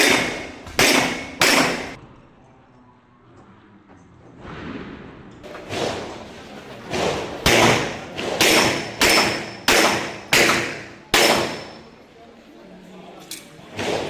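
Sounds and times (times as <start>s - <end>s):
pistol shots with ringing tail: 0.0s - 2.0s, 7.4s - 11.9s.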